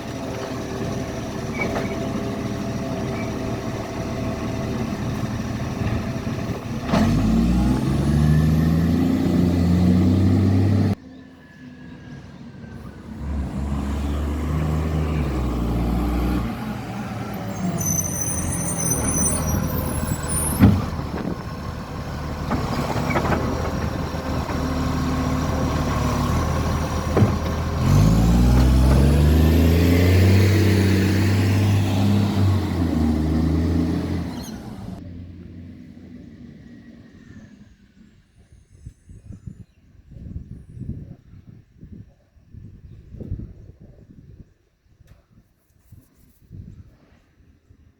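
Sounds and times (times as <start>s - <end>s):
truck diesel engine revving: 0.0s - 11.0s, 12.8s - 37.5s.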